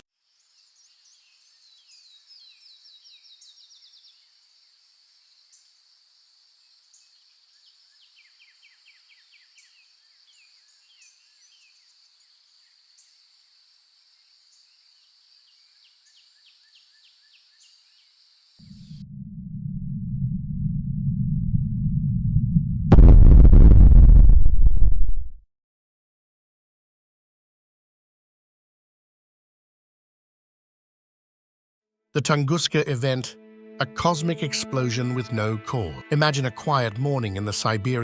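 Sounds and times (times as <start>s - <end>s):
small birds trilling and chirping: 0.2s - 18.6s
low rumble: 18.8s - 25.4s.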